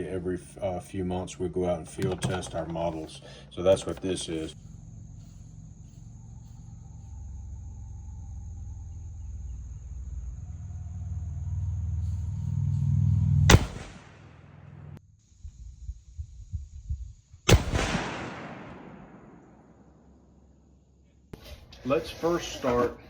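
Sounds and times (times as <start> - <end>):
low rumbling noise: 4.0 - 21.0
loud gunshot with echo: 13.5 - 14.3, 17.5 - 19.8.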